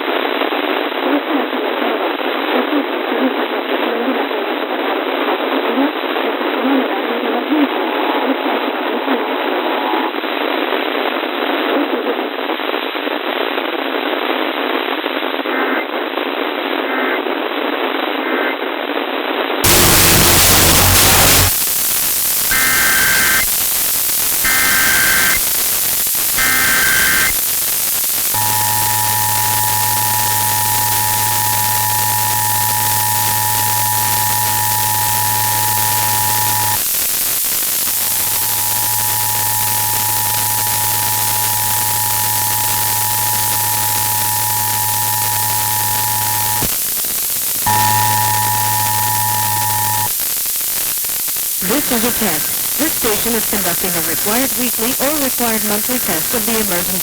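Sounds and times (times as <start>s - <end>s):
two-tone attention signal: 19.6s - 21.6s, 22.5s - 23.5s, 24.4s - 25.5s, 26.4s - 27.4s, 28.4s - 36.8s, 38.0s - 46.7s, 47.7s - 50.1s
static hiss: 19.6s - 57.0s
warbling data bursts: 19.6s - 57.0s.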